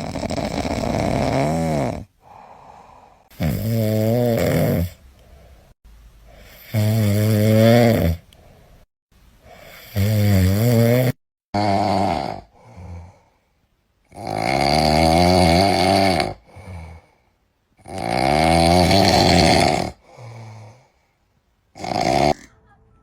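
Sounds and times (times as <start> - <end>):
animal snoring: 0.0 - 2.1, 3.2 - 5.0, 6.3 - 8.2, 9.5 - 13.3, 14.1 - 17.1, 17.8 - 20.9, 21.7 - 22.6.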